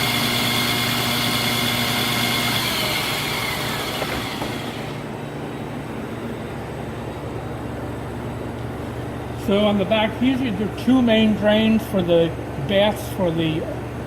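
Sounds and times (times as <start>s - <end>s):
wet belt sander whining: 0.0s - 5.2s
low steady hum: 3.3s - 14.0s.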